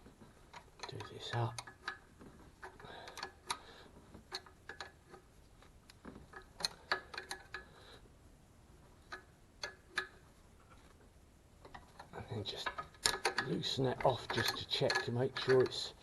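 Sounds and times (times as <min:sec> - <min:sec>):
spanners clicking on metal fitting: 0:12.6 - 0:16.0.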